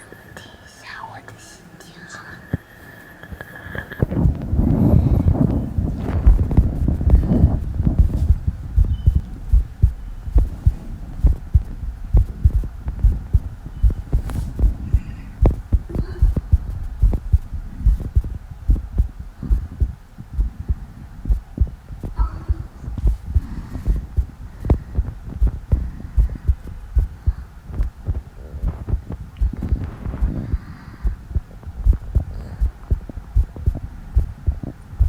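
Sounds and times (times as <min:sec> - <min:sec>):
heartbeat thumps: 0:04.0 - 0:35.0.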